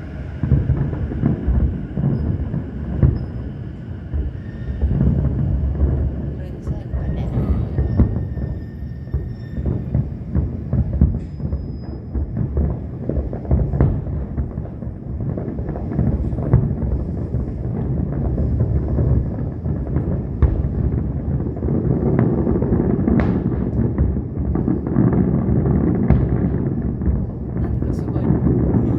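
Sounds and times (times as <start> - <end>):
fireworks booming: 0.0 - 28.9
fireworks cracking: 0.0 - 28.9.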